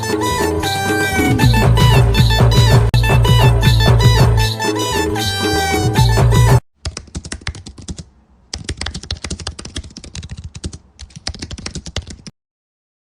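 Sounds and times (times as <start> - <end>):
music: 0.0 - 6.6
fast keyboard typing clicks: 6.8 - 12.3.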